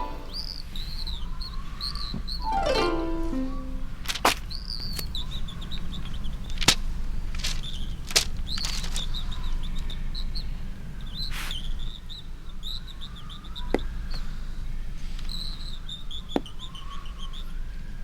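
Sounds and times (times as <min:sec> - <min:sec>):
short high-pitched chirps: 0:00.0 - 0:00.6.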